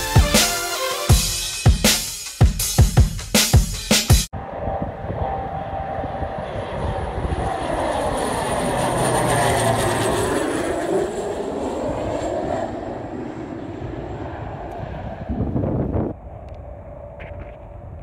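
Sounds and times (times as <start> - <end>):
airplane passing overhead: 4.3 - 18.0
thin high whine: 4.4 - 7.5.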